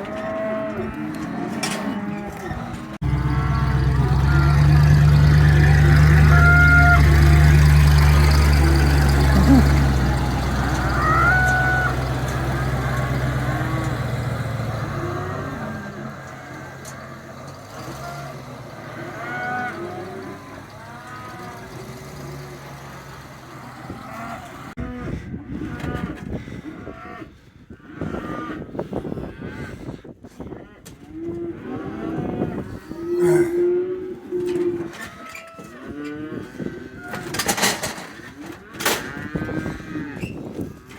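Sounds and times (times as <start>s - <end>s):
cattle mooing and bawling: 0.0s - 22.8s, 23.5s - 27.3s, 28.0s - 29.6s, 30.6s - 40.9s
vehicle engine running: 3.0s - 24.8s
knocks and rattles: 37.1s - 39.2s.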